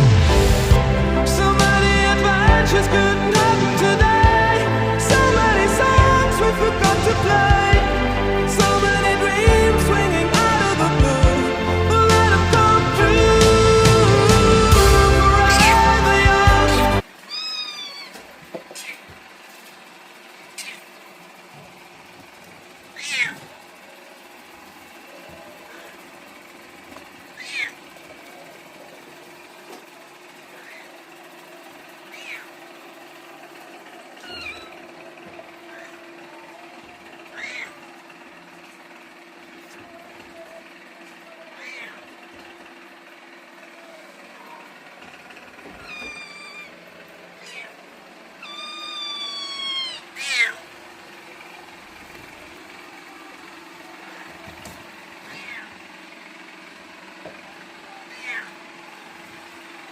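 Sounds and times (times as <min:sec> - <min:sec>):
kitten mewing: 0:17.3 - 0:18.2, 0:23.0 - 0:23.5, 0:34.2 - 0:34.7, 0:37.4 - 0:37.7, 0:41.6 - 0:42.0, 0:45.8 - 0:46.8, 0:47.4 - 0:47.8, 0:48.4 - 0:50.6, 0:55.3 - 0:55.7, 0:58.1 - 0:58.6.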